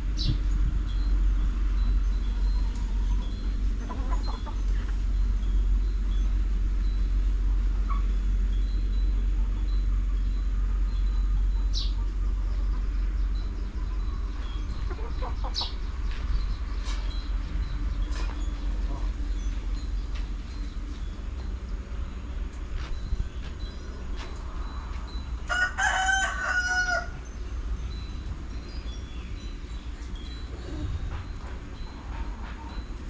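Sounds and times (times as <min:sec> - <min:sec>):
steady low rumble: 0:00.0 - 0:25.5, 0:27.0 - 0:33.0
chickens clucking: 0:02.3 - 0:05.2, 0:11.3 - 0:20.4.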